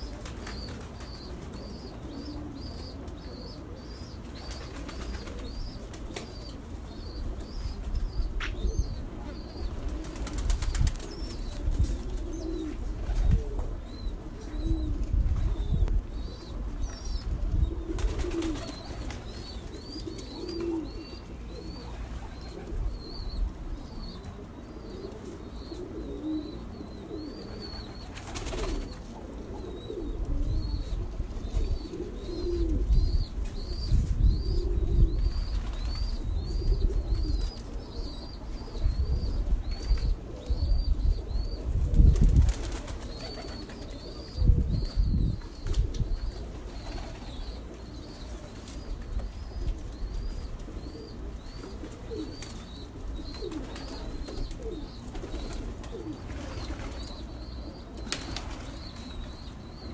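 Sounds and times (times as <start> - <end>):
pigeons cooing: 0.0 - 59.9.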